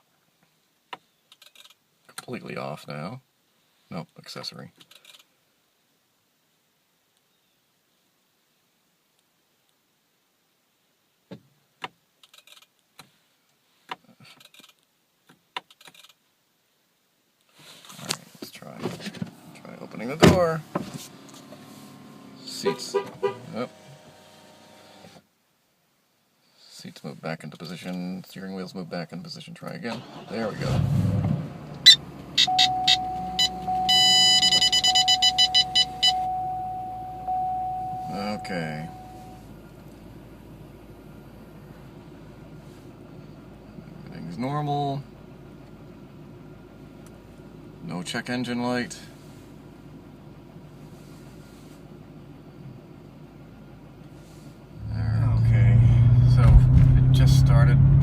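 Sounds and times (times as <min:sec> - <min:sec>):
dashboard warning beeps: 0:31.8 - 0:39.5
thin steady whine: 0:32.4 - 0:57.9.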